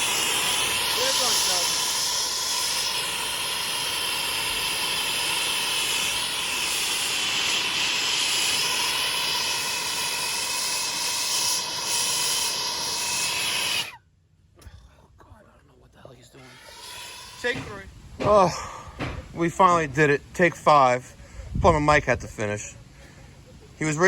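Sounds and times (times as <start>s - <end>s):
torch flame hissing: 0.0s - 14.0s, 16.4s - 20.8s.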